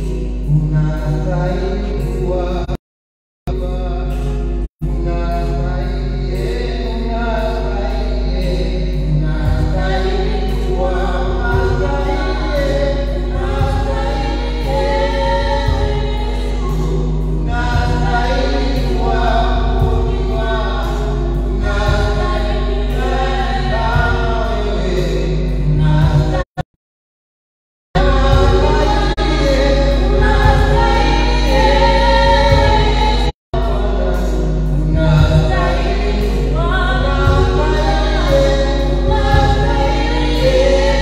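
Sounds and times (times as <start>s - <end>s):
instrumental backing: 3.5s - 26.4s, 28.0s - 41.0s
choir singing a hymn: 8.8s - 26.4s, 28.0s - 41.0s.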